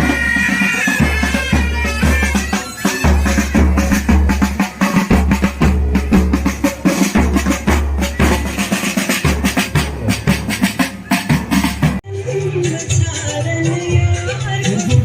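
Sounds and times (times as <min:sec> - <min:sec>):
marching band drums: 0:00.0 - 0:12.0.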